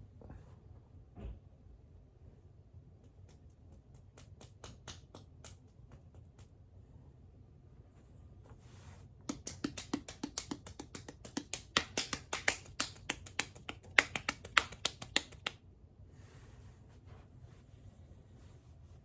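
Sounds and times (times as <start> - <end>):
hand slapping bare belly: 3.0 - 6.6, 9.3 - 15.6.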